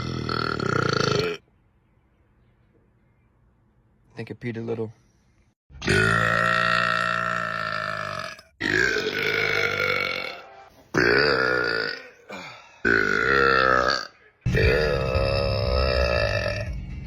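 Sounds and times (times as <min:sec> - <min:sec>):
man burping loudly: 0:00.0 - 0:01.4, 0:05.8 - 0:16.8.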